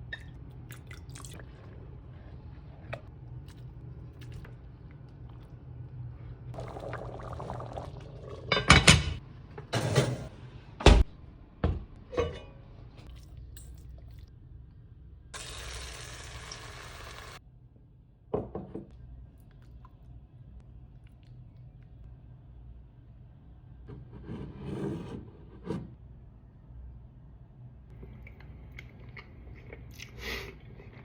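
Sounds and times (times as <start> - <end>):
pots and pans clattering: 8.5 - 9.2.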